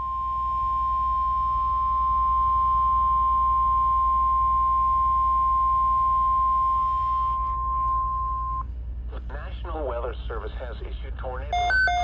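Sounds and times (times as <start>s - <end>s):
steady high-pitched alarm beep: 0.0s - 8.6s, 11.5s - 12.0s
low hum: 0.0s - 12.0s.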